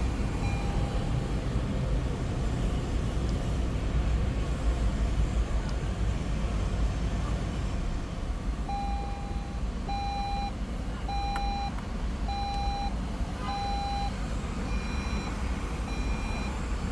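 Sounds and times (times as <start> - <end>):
low rumble of running vehicle: 0.0 - 16.9
electronic warning chime beeps: 0.4 - 1.1, 8.7 - 10.5, 11.1 - 11.7, 12.3 - 16.6.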